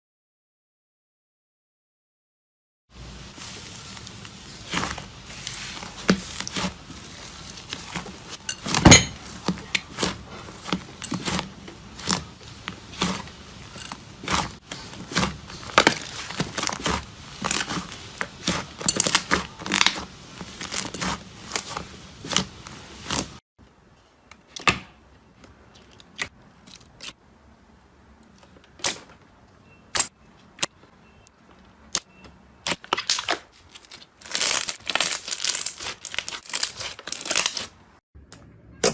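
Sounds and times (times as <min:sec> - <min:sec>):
slime squeezed crackling and popping: 0:32.6 - 0:37.7.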